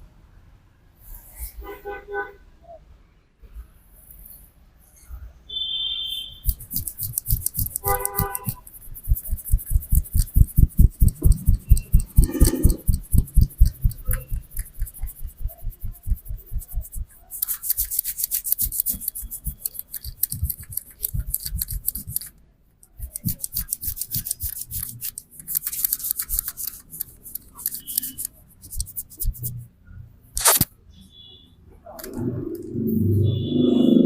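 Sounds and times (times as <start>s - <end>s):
sharp slaps: 30.4s - 30.7s.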